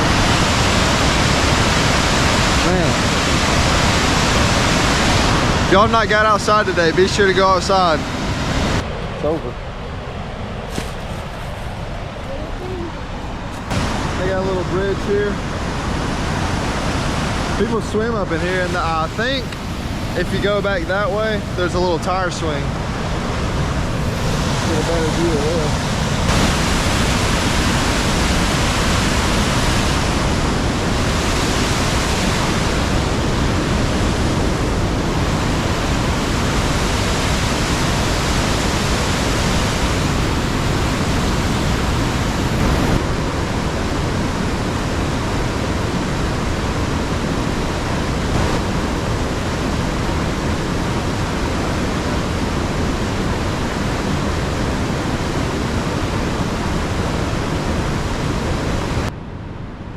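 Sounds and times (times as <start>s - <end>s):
waterfall rushing: 0.0s - 8.8s, 12.8s - 14.8s, 15.4s - 43.0s, 48.1s - 50.8s.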